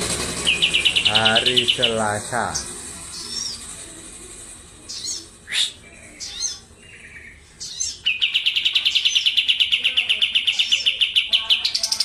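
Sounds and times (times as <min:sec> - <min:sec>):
bird rolling trill: 0:00.0 - 0:12.0
songbird chirps and calls: 0:00.4 - 0:03.8, 0:04.8 - 0:12.0.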